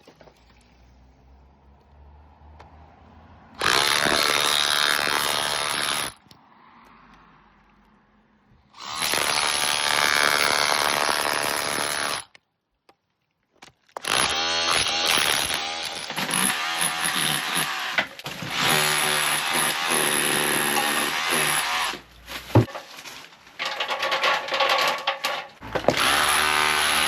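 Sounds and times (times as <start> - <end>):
power tool whining and grinding: 3.6 - 6.2, 14.0 - 22.0, 25.7 - 27.0.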